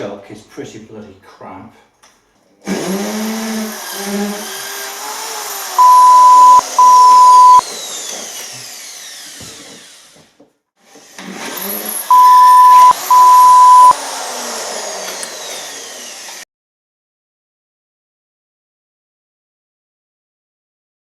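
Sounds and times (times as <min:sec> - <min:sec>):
power drill whine: 0:02.7 - 0:16.4
censor bleeps: 0:05.8 - 0:07.6, 0:12.1 - 0:14.0.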